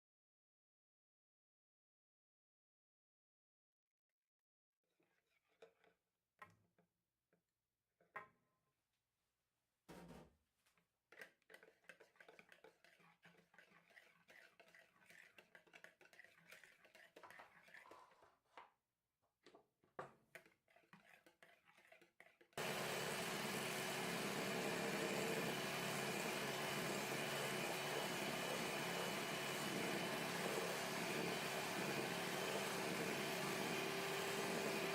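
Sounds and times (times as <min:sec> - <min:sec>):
utensils clicking in a bowl: 0:11.2 - 0:18.0, 0:20.3 - 0:22.6
electric mixer whirring: 0:22.6 - 0:34.9.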